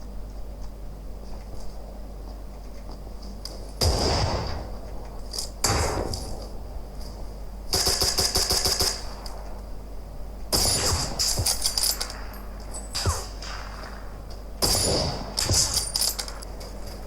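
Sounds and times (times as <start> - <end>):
gunfire bursts: 3.8 - 4.8, 7.7 - 9.4, 10.5 - 16.5.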